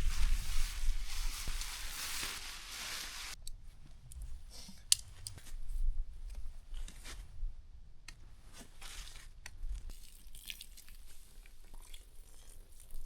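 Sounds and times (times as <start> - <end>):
soft crunches and rustles: 0.0 - 3.4, 8.4 - 9.9.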